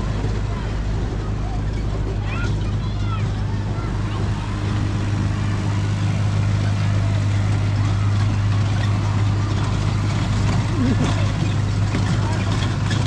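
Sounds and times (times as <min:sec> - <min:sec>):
motor humming: 0:00.0 - 0:13.0
rushing noise: 0:03.3 - 0:13.0.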